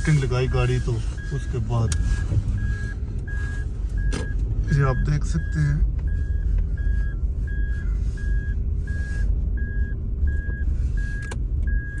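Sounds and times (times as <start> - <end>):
backup alarm beeping: 0.0 - 12.0.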